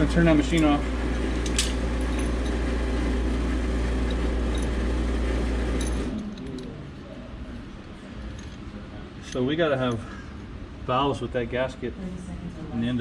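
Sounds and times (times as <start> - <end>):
pipe-freezing machine humming: 0.0 - 7.3.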